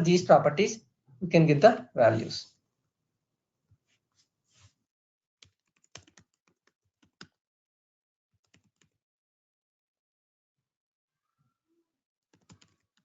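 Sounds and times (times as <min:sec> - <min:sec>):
faint keyboard typing: 0:05.4 - 0:07.4, 0:08.4 - 0:09.0, 0:12.3 - 0:13.0.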